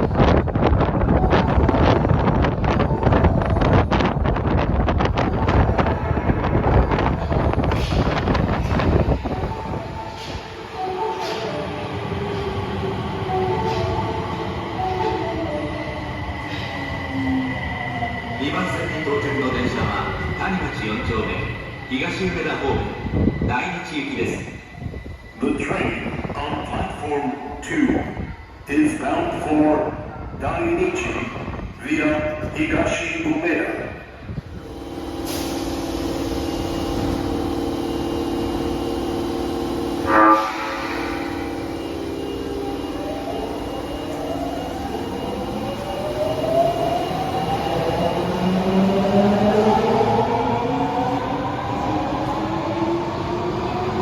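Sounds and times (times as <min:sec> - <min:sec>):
subway train humming: 0:00.0 - 0:54.0
train wheels rumbling: 0:34.4 - 0:54.0
train horn blast: 0:39.9 - 0:42.2.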